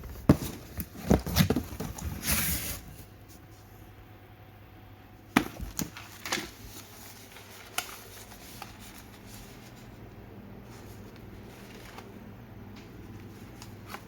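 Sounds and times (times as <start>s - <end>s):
packages handled with clicks and knocks: 0.0s - 3.0s, 5.3s - 10.0s, 10.7s - 14.0s.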